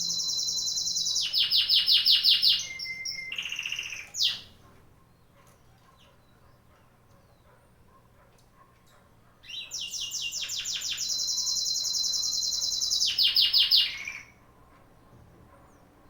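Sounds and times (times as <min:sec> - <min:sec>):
songbird singing trill: 0:00.0 - 0:04.6, 0:09.4 - 0:14.4.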